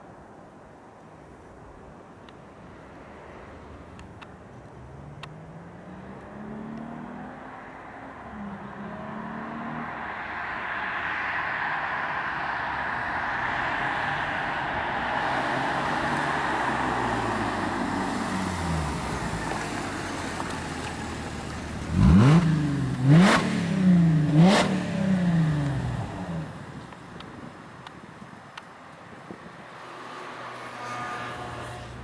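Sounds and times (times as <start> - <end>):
car engine revving: 5.0 - 10.2, 11.9 - 26.9.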